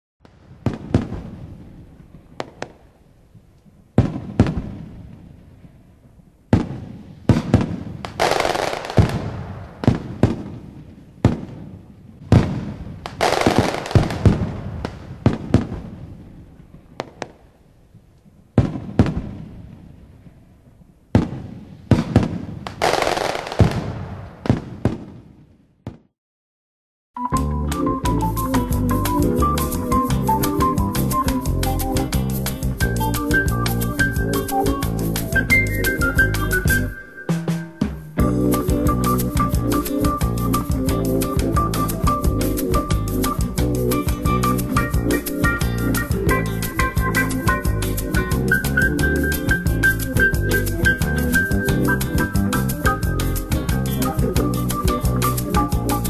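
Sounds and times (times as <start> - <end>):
fireworks booming: 0.2 - 20.4, 21.1 - 26.1, 34.6 - 40.4
fireworks crackling: 0.2 - 26.0, 28.1 - 56.0.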